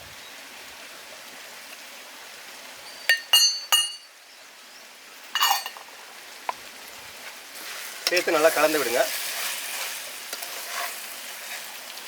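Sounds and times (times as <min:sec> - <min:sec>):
faint steady hiss: 0:00.0 - 0:12.0
metal spoon clinking on pot: 0:03.0 - 0:04.1, 0:05.4 - 0:05.8.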